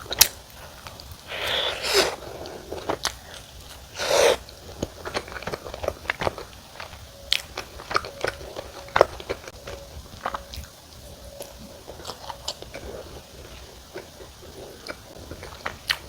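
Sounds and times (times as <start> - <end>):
biting and chewing: 0.0 - 9.5
wet mouth clicks: 1.3 - 2.9, 4.0 - 4.5.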